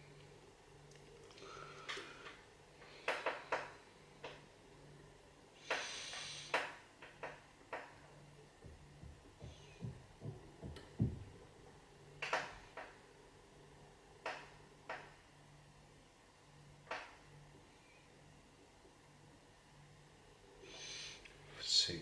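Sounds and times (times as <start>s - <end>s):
soft low knocks: 8.6s - 11.6s.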